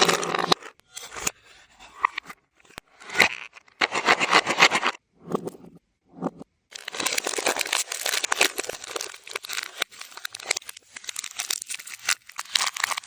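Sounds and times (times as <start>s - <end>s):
reversed crinkling of wrappers: 6.7s - 13.0s.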